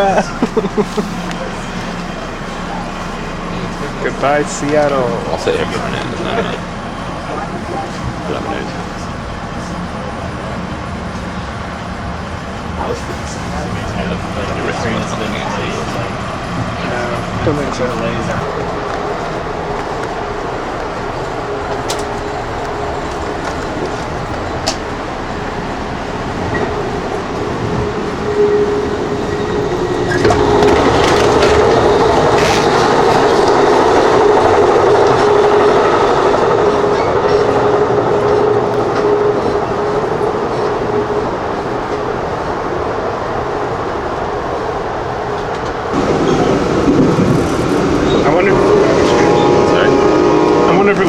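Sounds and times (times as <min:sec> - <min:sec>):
steady hum: 0:00.0 - 0:51.0
train wheels rumbling on track: 0:00.0 - 0:51.0.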